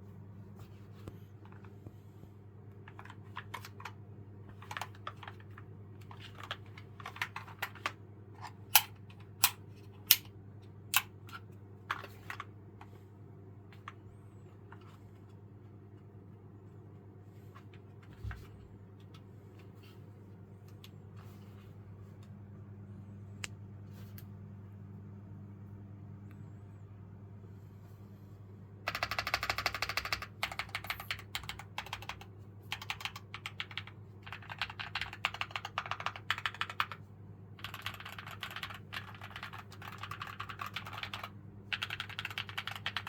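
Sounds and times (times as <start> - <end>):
steady low hum: 0.0 - 43.0
mechanical keyboard keystrokes: 28.9 - 37.0, 37.6 - 43.0.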